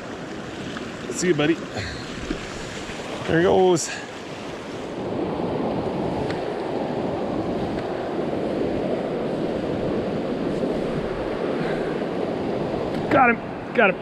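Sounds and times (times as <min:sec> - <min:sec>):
creek water rushing: 0:00.0 - 0:14.0.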